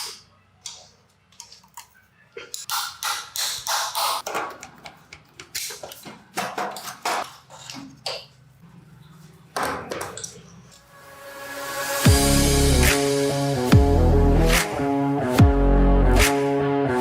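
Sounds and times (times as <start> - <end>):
hand tools knocking and clicking: 2.6 - 8.2.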